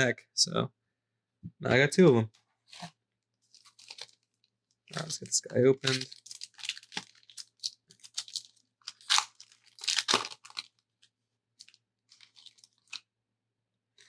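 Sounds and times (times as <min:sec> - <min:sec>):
wrapper tearing and crinkling: 0:03.5 - 0:04.3, 0:04.9 - 0:05.2, 0:05.8 - 0:10.8, 0:11.6 - 0:13.0.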